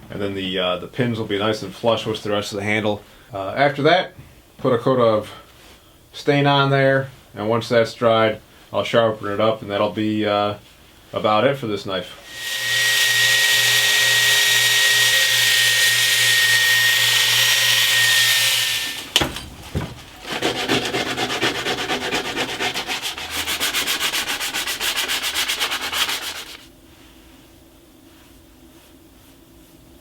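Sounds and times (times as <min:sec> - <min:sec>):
sanding wood with whine: 0:12.2 - 0:26.7
back-and-forth rubbing strokes: 0:12.2 - 0:30.0.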